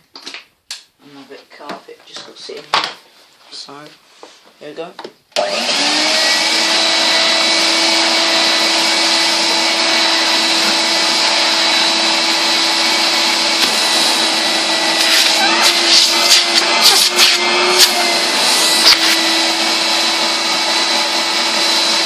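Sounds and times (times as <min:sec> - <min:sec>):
vacuum cleaner motor whine: 0:05.4 - 0:22.0.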